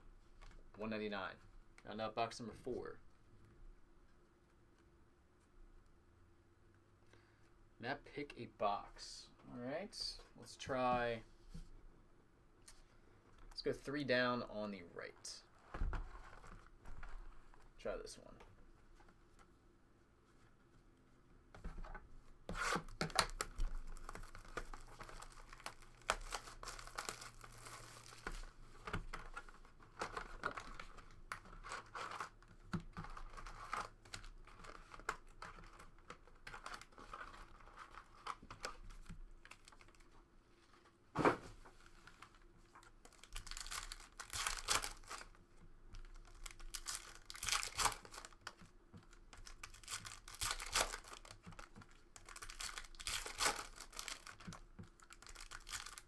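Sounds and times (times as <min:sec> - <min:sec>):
plastic wrapping tearing and crinkling: 0:22.5 - 0:40.1, 0:42.2 - 0:45.4, 0:46.0 - 0:56.0.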